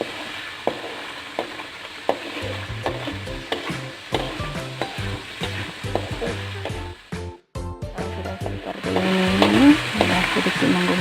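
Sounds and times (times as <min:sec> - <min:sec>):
paste sizzling in hot oil: 0:00.0 - 0:07.3, 0:08.4 - 0:11.0
utensil tapping pan: 0:01.4 - 0:06.9, 0:08.4 - 0:11.0.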